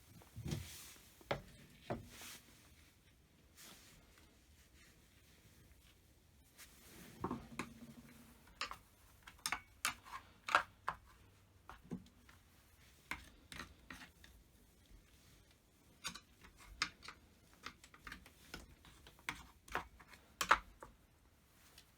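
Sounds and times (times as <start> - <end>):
tools clicking and knocking: 16.0 - 20.9.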